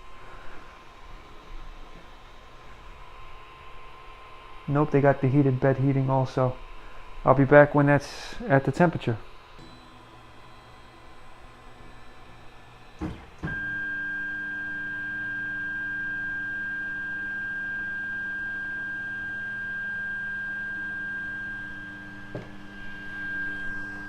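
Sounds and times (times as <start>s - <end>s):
printer high-pitched whine: 9.3s - 24.0s
low hum: 9.4s - 24.0s.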